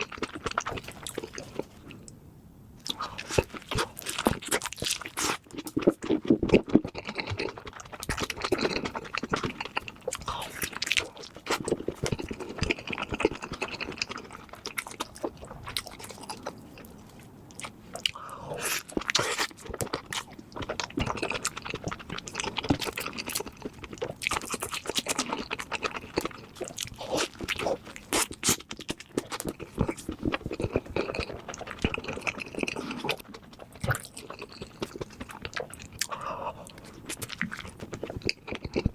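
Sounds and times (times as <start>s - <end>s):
person chewing crunchy food: 0.0s - 2.1s, 2.8s - 38.9s.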